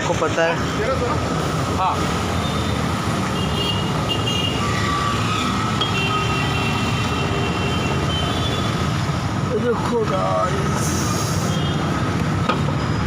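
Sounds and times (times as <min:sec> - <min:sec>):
traffic and engine noise: 0:00.0 - 0:13.0.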